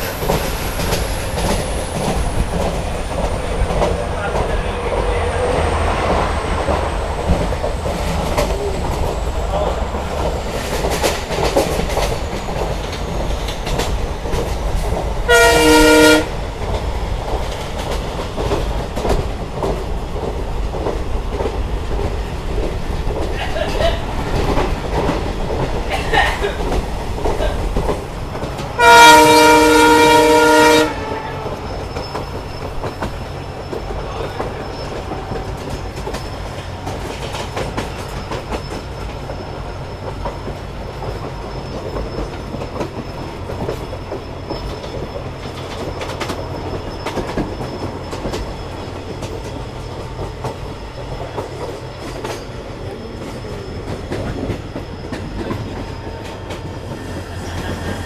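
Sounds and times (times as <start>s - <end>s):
train wheels clacking on rails: 0.0s - 58.0s
locomotive horn blast: 15.2s - 16.4s, 28.8s - 31.8s.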